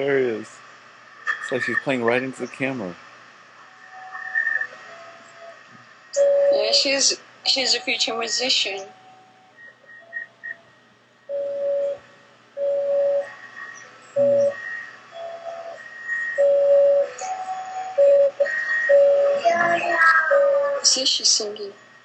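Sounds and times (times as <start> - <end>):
baby singing: 18.6 - 21.0.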